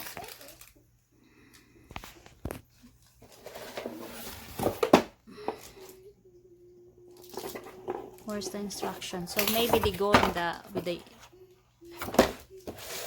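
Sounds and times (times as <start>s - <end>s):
plastic packaging rustling: 0.0s - 0.9s, 7.2s - 13.0s.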